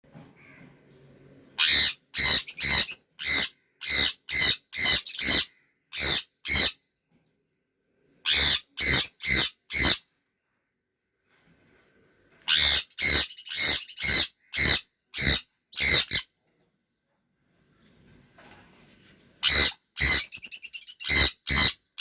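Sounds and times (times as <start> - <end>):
parrot squawking: 1.6 - 6.8, 8.3 - 10.0, 12.5 - 16.2, 19.4 - 21.8.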